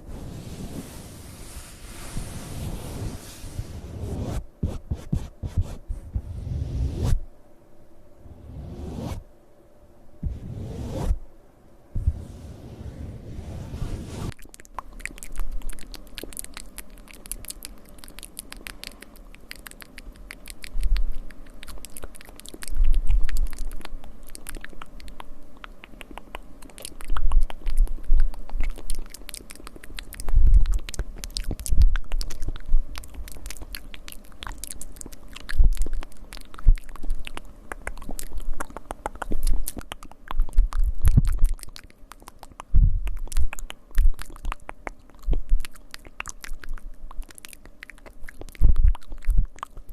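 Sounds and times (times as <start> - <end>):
soft low thuds: 12.0 - 12.5
asmr scratching and mouth clicks: 14.1 - 49.9.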